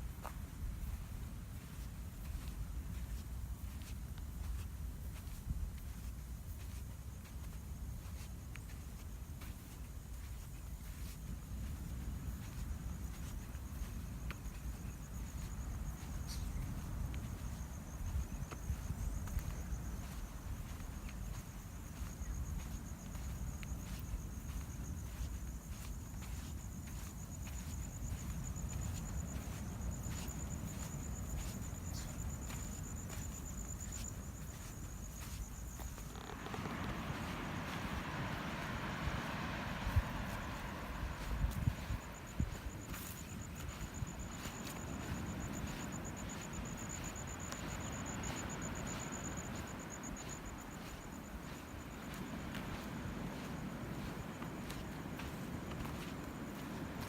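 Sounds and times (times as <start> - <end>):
footsteps in sand: 0.0 - 57.0
insects trilling: 0.0 - 57.0
ocean surf rumble: 36.0 - 57.0.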